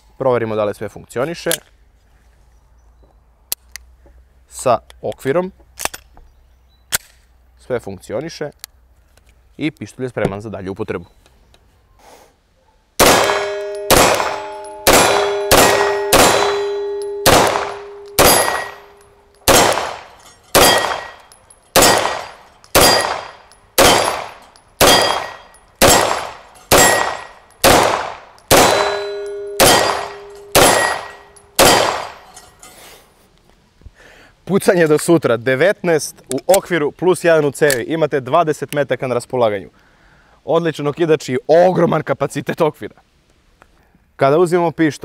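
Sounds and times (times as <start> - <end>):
pistol shots: 13.0 - 32.2
metallic ringing tone: 13.3 - 19.5, 28.6 - 32.8.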